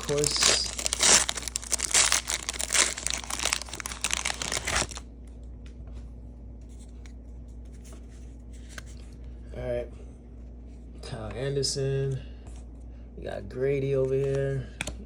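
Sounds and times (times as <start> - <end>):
card pack wrapper crinkling: 0.0 - 5.0.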